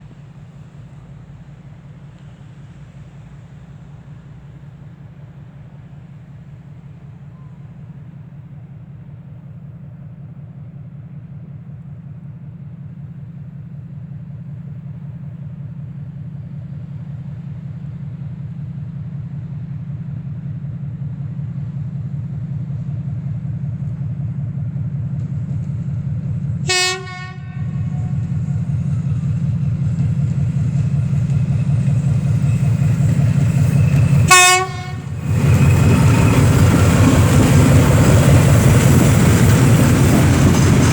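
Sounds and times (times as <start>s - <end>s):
diesel locomotive engine drone: 0.0s - 40.9s
locomotive horn blasts: 26.7s - 28.2s, 34.2s - 35.5s.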